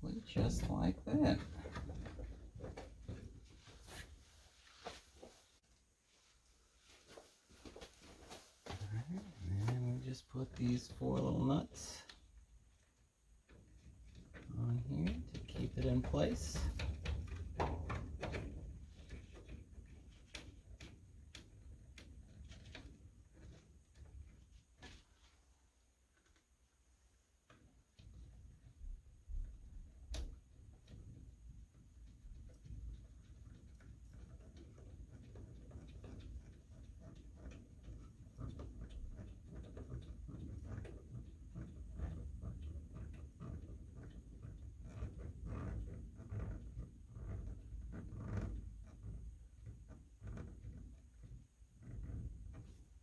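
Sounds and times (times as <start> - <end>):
low handling rumble: 8.8 - 11.7.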